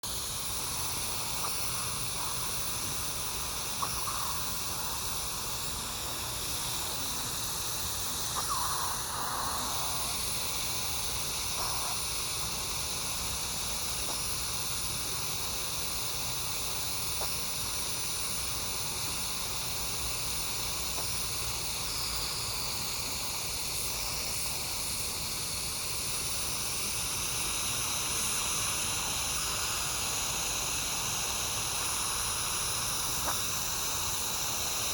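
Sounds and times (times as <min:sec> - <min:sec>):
steady background hiss: 0:00.0 - 0:34.9.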